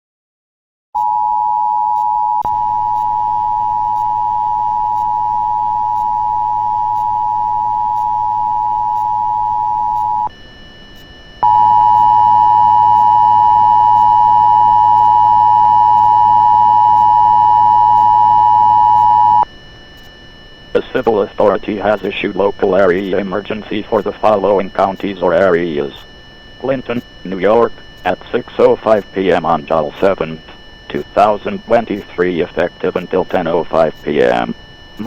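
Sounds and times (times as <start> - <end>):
two-tone attention signal: 11.4 - 19.5.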